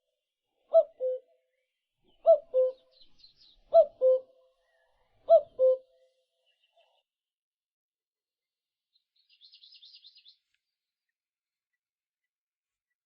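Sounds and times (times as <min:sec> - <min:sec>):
faint high bird chirps: 0:00.8 - 0:07.1, 0:08.9 - 0:11.8.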